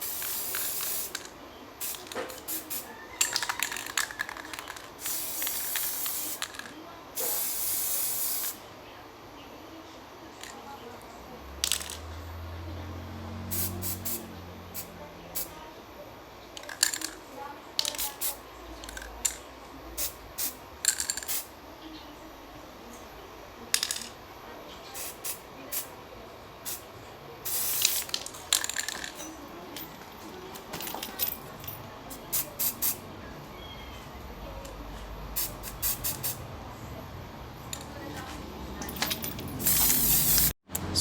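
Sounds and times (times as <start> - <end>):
spray paint can hissing: 0.0 - 8.6, 13.5 - 14.2, 27.5 - 28.9, 32.3 - 33.0, 35.4 - 36.4, 39.6 - 40.6.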